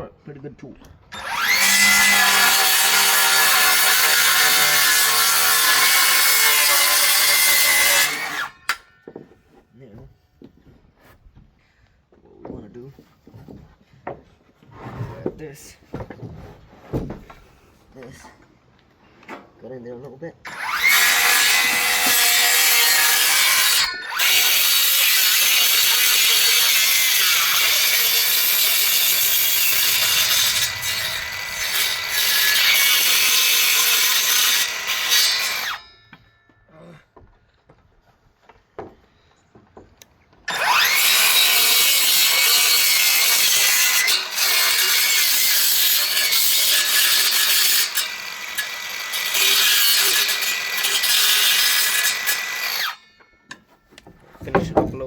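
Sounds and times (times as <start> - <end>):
power saw cutting wood: 1.1 - 8.9, 20.5 - 36.0, 40.5 - 53.2, 54.0 - 55.0.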